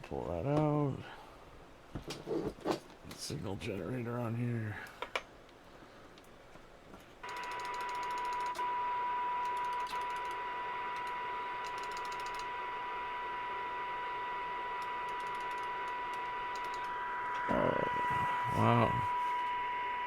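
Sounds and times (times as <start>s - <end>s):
steady test tone: 13.1s - 20.0s.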